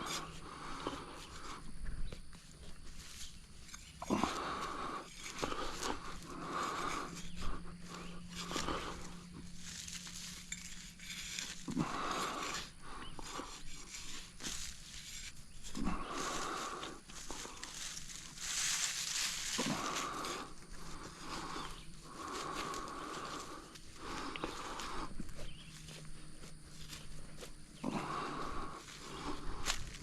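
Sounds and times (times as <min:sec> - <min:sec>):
man breathing heavily: 0:00.0 - 0:30.0
small scuffs and clicks: 0:28.8 - 0:30.0.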